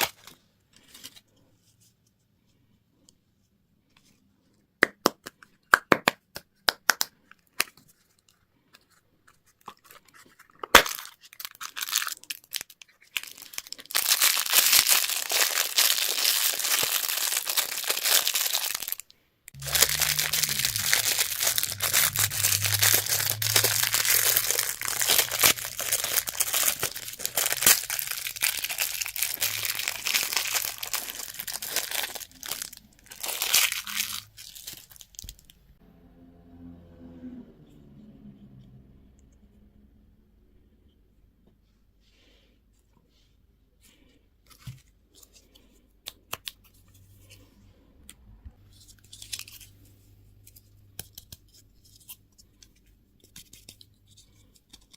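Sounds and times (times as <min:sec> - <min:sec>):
candy wrappers crinkling: 0:09.4 - 0:35.6, 0:48.7 - 0:49.8.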